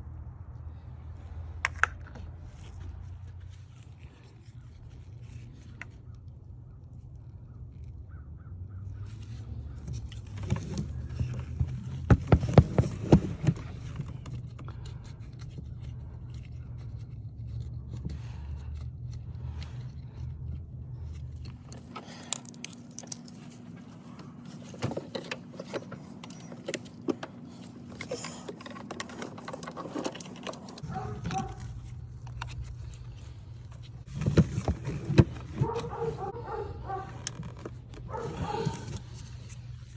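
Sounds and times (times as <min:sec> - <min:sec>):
steady low hum: 0:02.3 - 0:39.9
metal tools clinking and scraping: 0:21.3 - 0:31.7.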